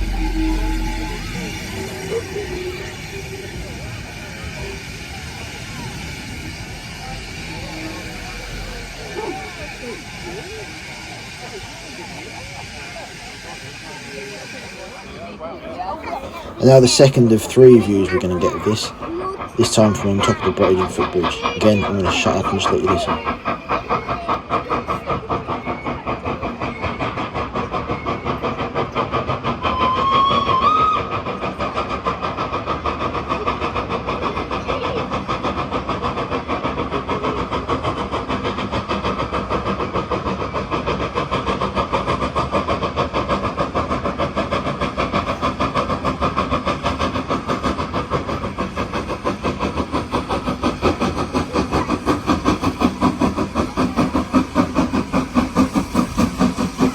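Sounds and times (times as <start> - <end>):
rising steam whistle: 0.0 - 15.0, 29.6 - 31.3
steam locomotive exhaust beating: 0.0 - 56.9.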